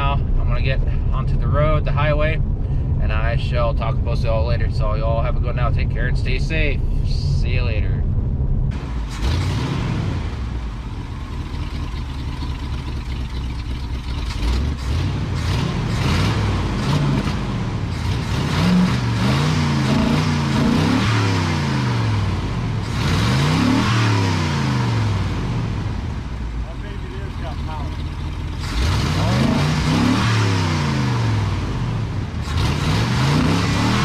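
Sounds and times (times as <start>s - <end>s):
road noise: 0.0s - 34.0s
vehicle engine accelerating: 8.0s - 34.0s.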